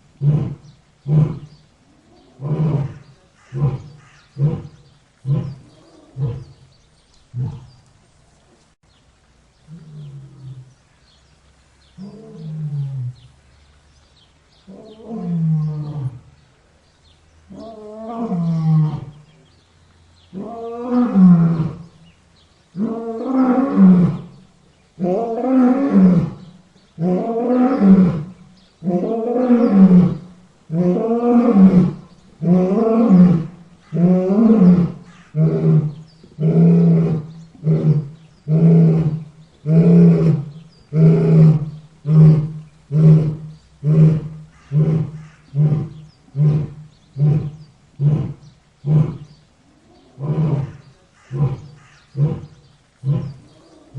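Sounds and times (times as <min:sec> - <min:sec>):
lion roaring: 0:00.2 - 0:06.6, 0:25.0 - 0:53.9.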